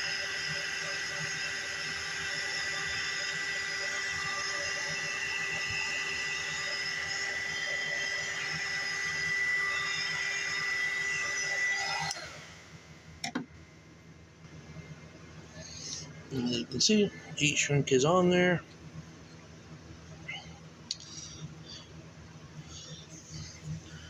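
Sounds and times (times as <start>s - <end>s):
heat gun running: 0.0s - 13.4s.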